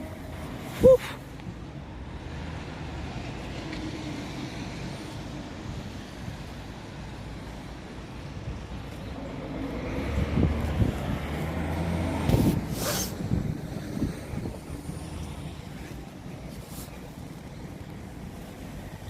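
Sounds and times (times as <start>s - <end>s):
air brake hiss: 12.4s - 13.2s.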